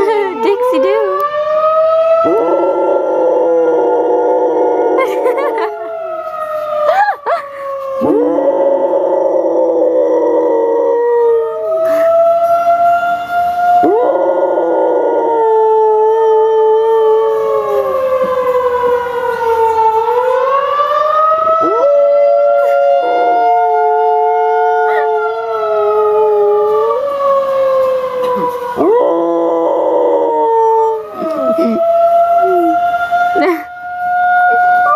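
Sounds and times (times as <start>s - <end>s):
tornado siren wailing: 0.0s - 34.9s
dog howling: 2.2s - 5.8s, 8.0s - 11.6s, 13.8s - 18.2s, 21.5s - 27.1s, 28.8s - 33.5s, 34.5s - 34.9s.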